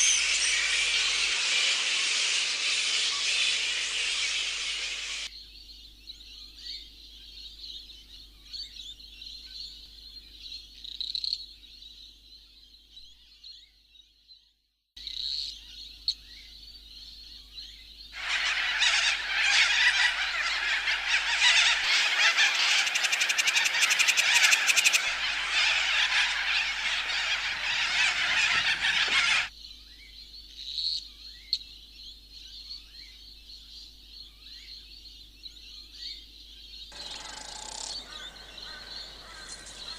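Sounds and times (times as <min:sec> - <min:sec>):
high-pitched animal chorus: 0:00.0 - 0:05.3, 0:18.2 - 0:29.5, 0:37.0 - 0:39.9
loud rushing noise: 0:00.0 - 0:05.3
short chirps: 0:00.0 - 0:05.3.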